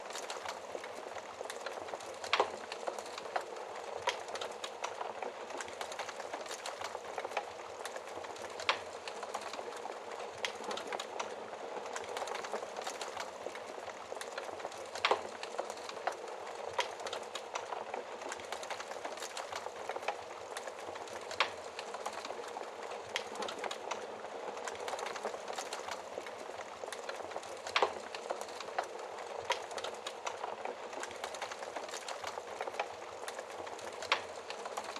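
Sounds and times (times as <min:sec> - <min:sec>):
fire popping: 0:00.0 - 0:34.9
wood fire crackling: 0:00.0 - 0:34.9.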